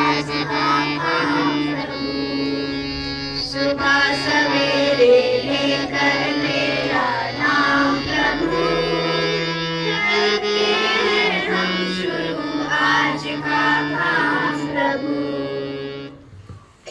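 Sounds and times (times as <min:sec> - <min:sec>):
person singing: 0:00.0 - 0:16.0
held drone accompaniment: 0:00.0 - 0:16.2.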